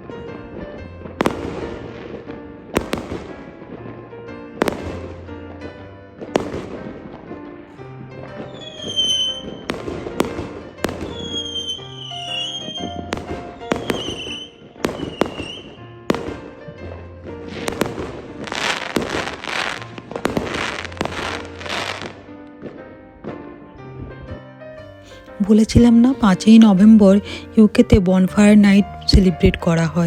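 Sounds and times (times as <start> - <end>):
background music: 0.0 - 30.0
fireworks bangs: 1.0 - 4.0, 4.6 - 23.5
firework crackling: 1.1 - 3.8, 4.6 - 5.4, 6.2 - 7.3, 8.2 - 16.7, 17.3 - 22.4
falling firework whistles: 8.5 - 9.8, 10.9 - 15.8.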